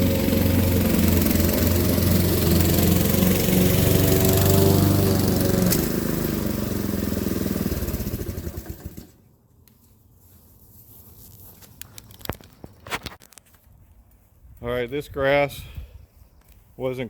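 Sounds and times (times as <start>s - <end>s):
lawn mower engine winding down: 0.0s - 9.2s.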